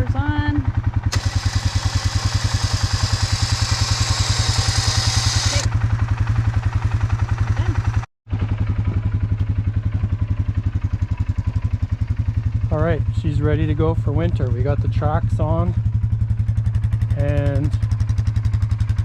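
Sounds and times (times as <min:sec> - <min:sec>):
atv engine idling: 0:00.0 - 0:19.0.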